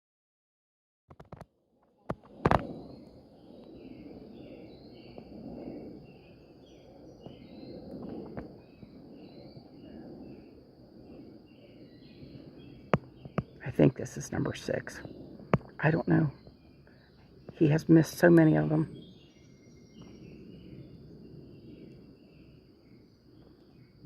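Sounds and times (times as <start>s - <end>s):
insect chirps: 2.1s - 24.0s
insects buzzing: 2.1s - 24.0s.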